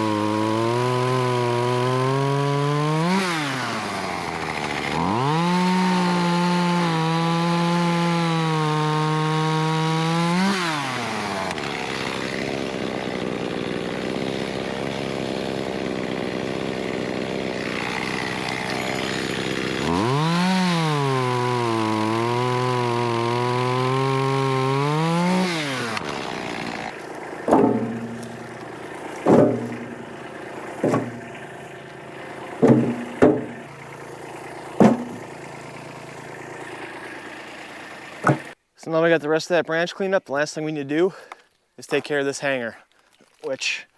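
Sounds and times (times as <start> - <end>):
chainsaw cutting wood: 0.0 - 38.6
sharp knocks: 26.9 - 36.5, 38.2 - 38.6.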